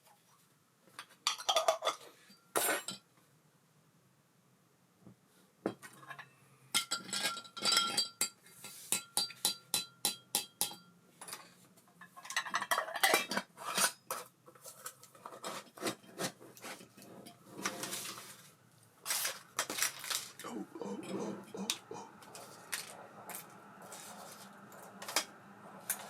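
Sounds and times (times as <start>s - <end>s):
metal reel parts and tools clinking: 5.8s - 20.4s, 22.3s - 26.0s.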